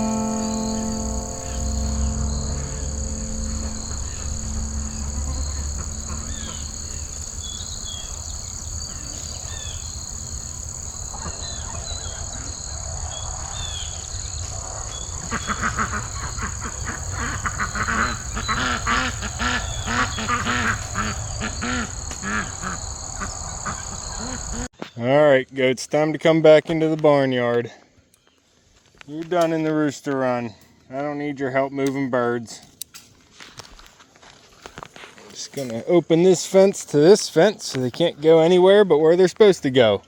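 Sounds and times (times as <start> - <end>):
waterfowl quacking: 15.3 - 22.8.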